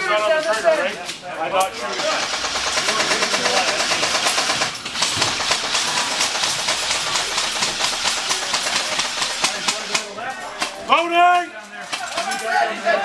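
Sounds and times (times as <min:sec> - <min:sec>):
airsoft guns firing rapidly: 0:01.8 - 0:11.2.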